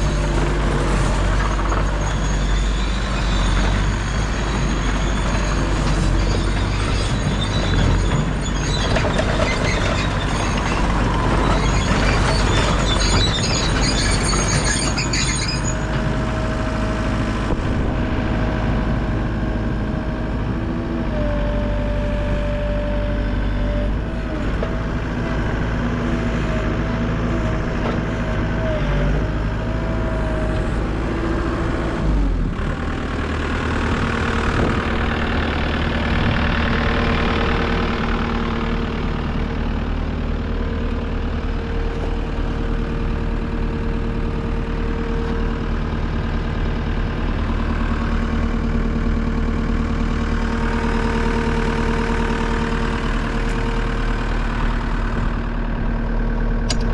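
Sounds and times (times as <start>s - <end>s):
high squealing and rattling: 0.0s - 16.0s
diesel engine running: 0.0s - 56.9s.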